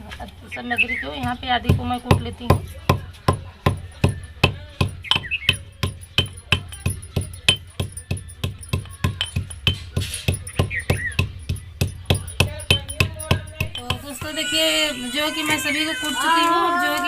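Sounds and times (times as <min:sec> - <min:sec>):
pestle pounding in a mortar: 0:01.2 - 0:14.3.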